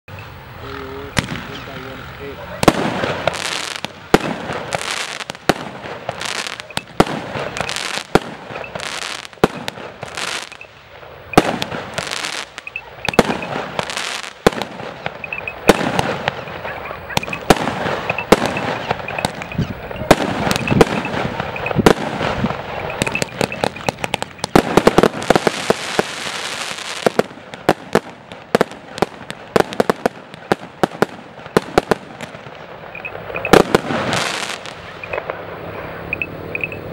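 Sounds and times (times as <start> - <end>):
fireworks shots and bursts: 0.6 - 36.9.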